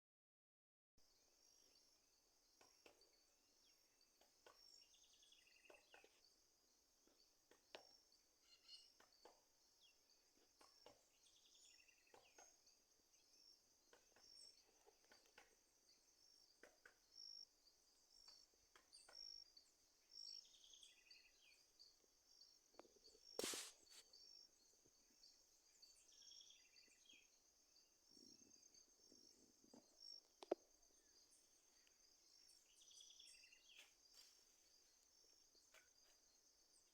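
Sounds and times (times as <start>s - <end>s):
crickets chirping: 1.0s - 36.9s.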